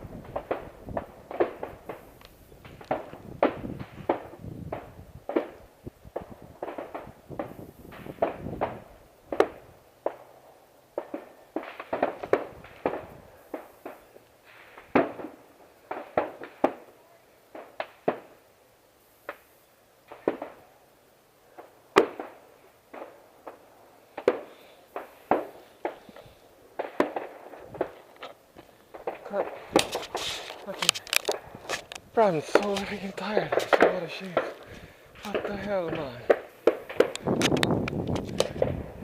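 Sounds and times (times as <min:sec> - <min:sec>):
footsteps climbing a trail: 0:27.4 - 0:38.8.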